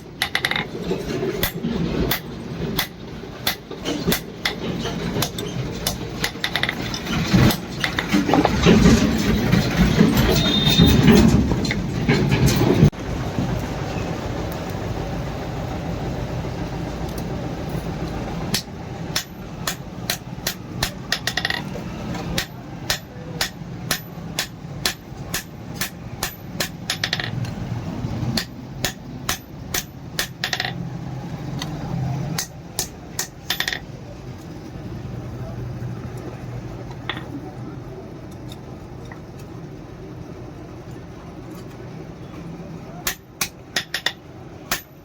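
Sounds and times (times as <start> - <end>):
hammer striking steel: 1.4 - 6.8, 18.5 - 21.6, 22.3 - 27.5, 28.4 - 30.8, 32.4 - 33.9, 43.0 - 45.0.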